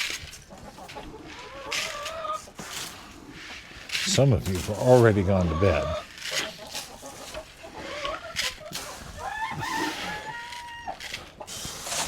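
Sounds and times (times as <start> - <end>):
birds rustling: 0.0 - 12.0
chicken long drawn-out call: 9.1 - 11.3.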